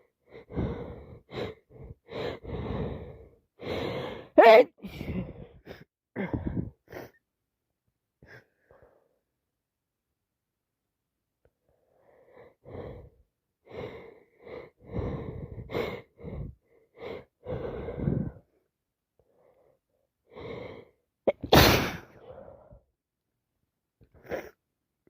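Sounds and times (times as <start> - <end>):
person breathing unevenly: 0.0 - 7.2, 11.6 - 18.6
person sneezing loudly: 21.3 - 22.1.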